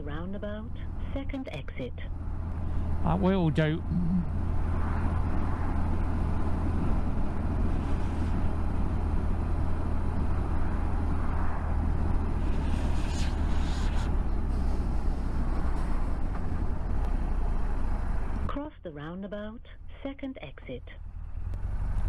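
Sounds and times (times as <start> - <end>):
road noise: 0.0 - 22.0
wind rumble: 2.0 - 18.5.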